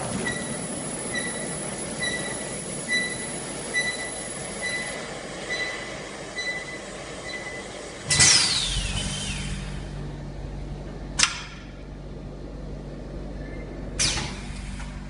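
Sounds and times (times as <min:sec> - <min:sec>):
machine motor hum: 0:00.0 - 0:15.0.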